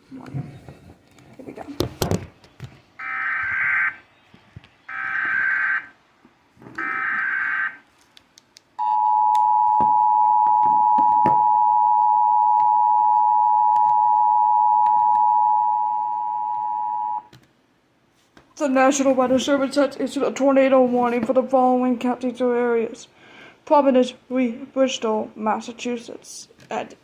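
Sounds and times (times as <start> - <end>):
two-tone attention signal: 8.8 - 17.3.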